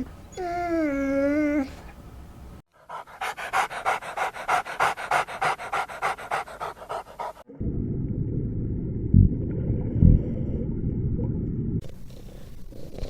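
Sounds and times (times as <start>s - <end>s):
dog panting: 2.7s - 7.5s.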